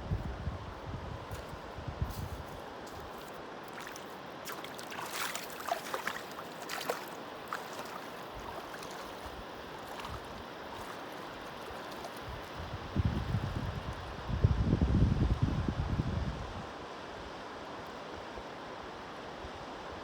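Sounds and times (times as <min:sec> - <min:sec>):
river water running: 0:01.2 - 0:14.2
short splashes: 0:02.2 - 0:12.7.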